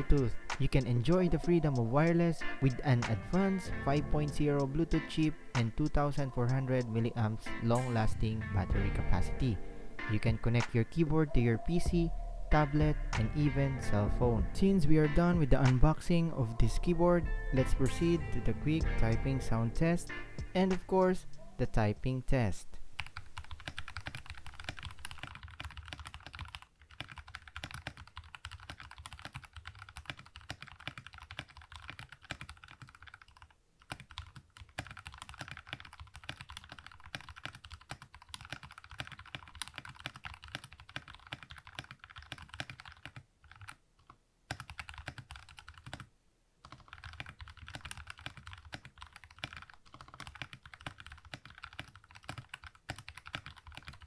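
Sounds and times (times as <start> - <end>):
mechanical keyboard typing: 23.0 - 54.0.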